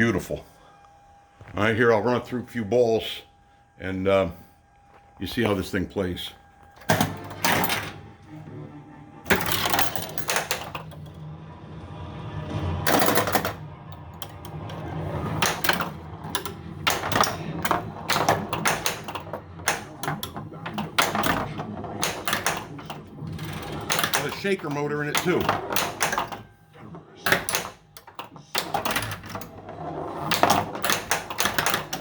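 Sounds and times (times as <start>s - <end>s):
low steady machine tone: 0.0s - 32.0s
pinball flippers and ball clacking: 5.3s - 32.0s.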